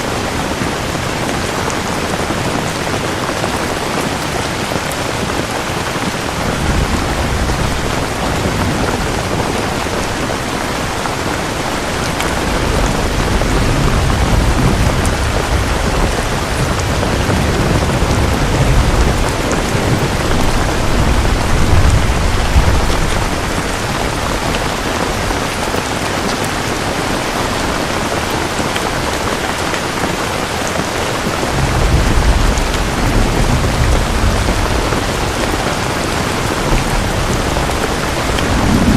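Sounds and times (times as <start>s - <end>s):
heavy rain falling: 0.0s - 38.9s.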